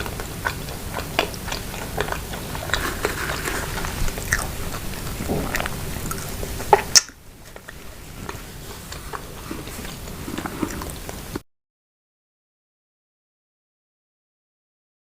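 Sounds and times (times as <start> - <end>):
chewing and mouth sounds: 0.0 - 11.4.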